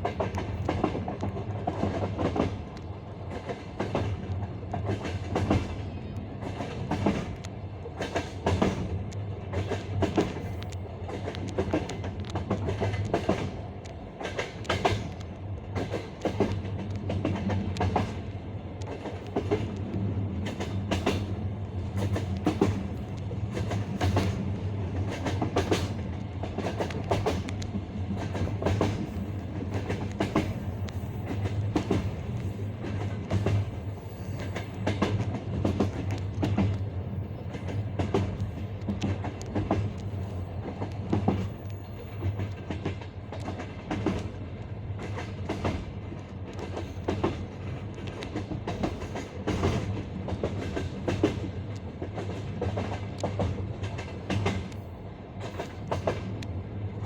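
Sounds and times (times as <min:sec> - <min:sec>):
low rumble of moving train: 0:00.0 - 0:57.0
train wheels clacking over rail joints: 0:08.0 - 0:18.2, 0:18.9 - 0:44.4, 0:45.0 - 0:54.8, 0:55.4 - 0:56.4.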